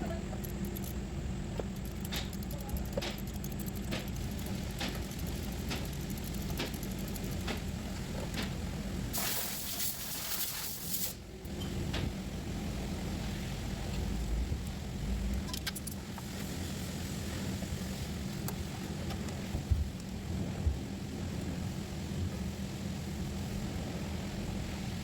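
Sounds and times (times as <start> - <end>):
steady low hum: 0.0 - 25.0
hiss: 1.8 - 11.3.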